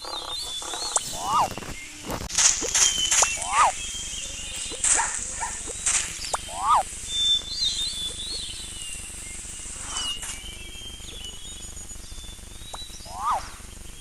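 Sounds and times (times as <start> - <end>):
high bird-like whistles: 0.0 - 14.0
animal call rising and falling: 1.1 - 1.6, 3.4 - 3.8, 6.4 - 6.9, 13.0 - 13.7.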